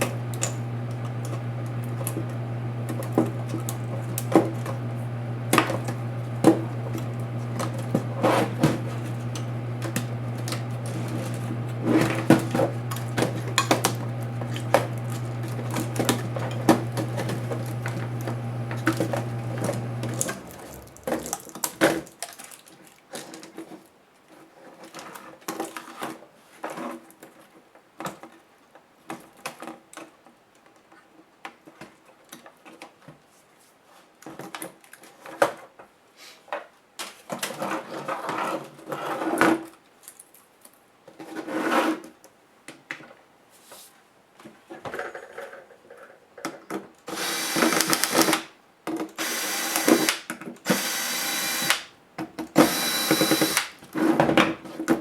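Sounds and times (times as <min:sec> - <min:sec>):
small power tool whirring: 0:00.0 - 0:21.5, 0:47.1 - 0:48.5, 0:49.2 - 0:51.9, 0:52.5 - 0:53.8.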